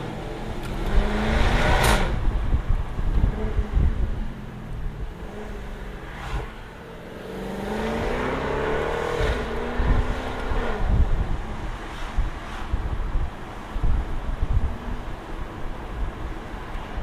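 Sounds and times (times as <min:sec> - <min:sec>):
car engine accelerating: 0:00.0 - 0:11.2.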